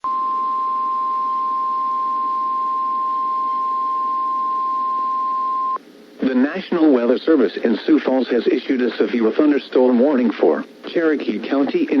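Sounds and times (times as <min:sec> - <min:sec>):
steady high-pitched alarm tone: 0:00.0 - 0:05.8
faint radio hiss: 0:00.0 - 0:12.0.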